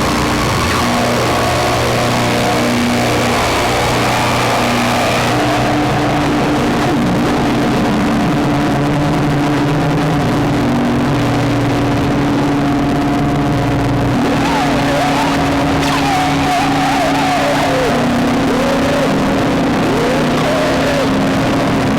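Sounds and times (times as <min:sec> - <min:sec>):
dense buzzing noise: 0:00.0 - 0:21.9
held synth tones: 0:14.2 - 0:21.9.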